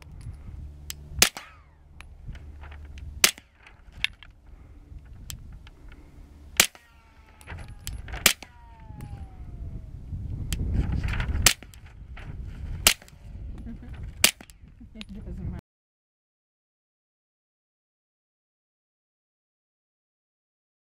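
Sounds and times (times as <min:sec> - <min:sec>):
handgun shots: 0:01.2 - 0:01.8, 0:03.2 - 0:03.6, 0:06.6 - 0:09.4, 0:12.8 - 0:13.2, 0:14.2 - 0:14.5.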